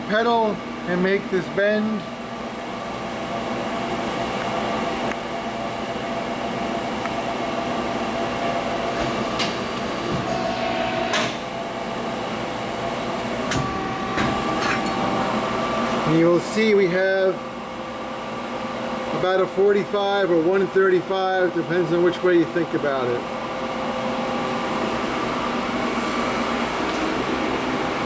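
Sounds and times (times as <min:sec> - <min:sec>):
press brake machine hum: 0:06.9 - 0:16.8, 0:23.4 - 0:28.0.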